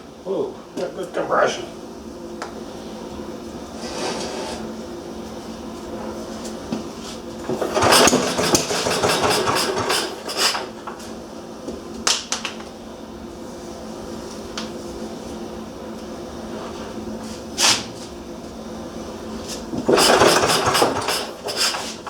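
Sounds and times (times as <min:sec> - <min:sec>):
engine cranking clatter: 0:07.4 - 0:10.8, 0:19.8 - 0:22.0.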